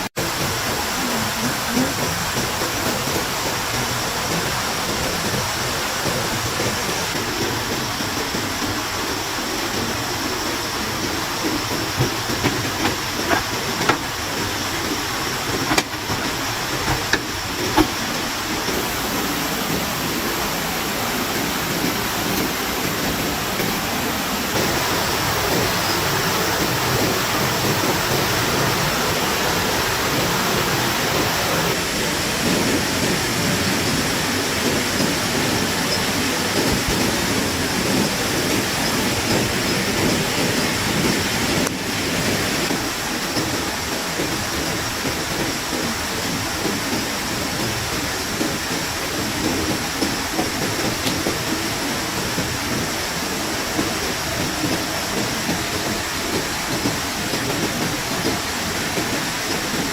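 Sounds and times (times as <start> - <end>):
steady rushing hiss: 0.0 - 59.9
sharp knocks: 11.4 - 18.2.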